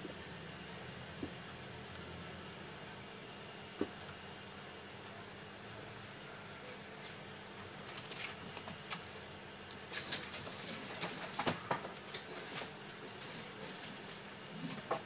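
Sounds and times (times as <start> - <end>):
faint room hum: 0.0 - 15.0
small objects clicking and rustling: 9.7 - 15.0.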